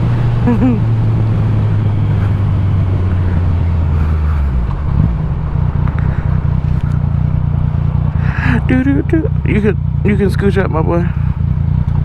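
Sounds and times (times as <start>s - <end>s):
wind noise: 0.0s - 7.2s
motorcycle engine running: 0.0s - 12.0s.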